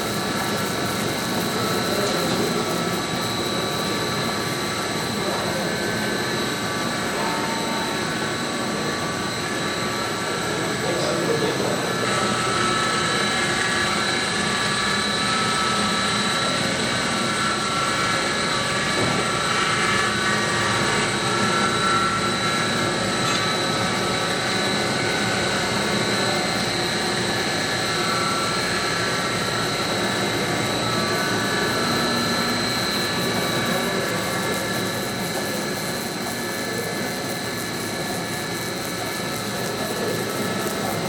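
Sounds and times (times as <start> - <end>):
steady high whine: 0.0 - 41.0.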